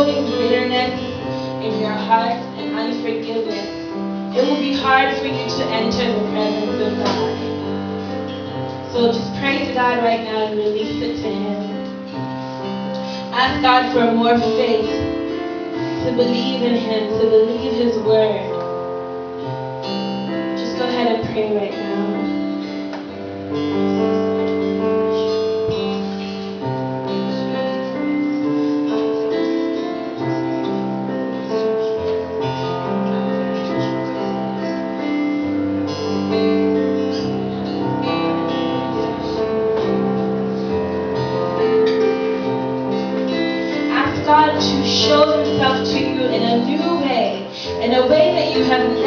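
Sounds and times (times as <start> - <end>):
slow instrumental music: 0.0 - 49.0
voice: 1.6 - 3.7, 4.4 - 7.4, 9.0 - 11.7, 13.3 - 15.1, 16.0 - 18.5, 20.6 - 22.1, 43.9 - 49.0.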